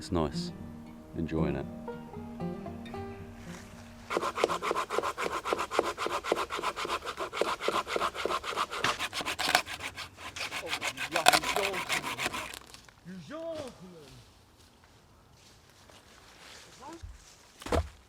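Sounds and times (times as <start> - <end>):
hand saw cutting wood: 4.1 - 12.7.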